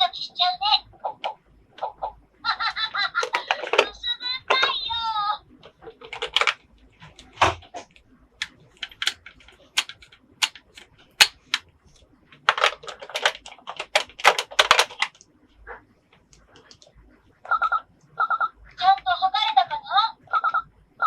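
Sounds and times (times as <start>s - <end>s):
plastic toy pieces clicking: 6.0s - 6.6s, 8.4s - 11.7s, 12.5s - 15.2s.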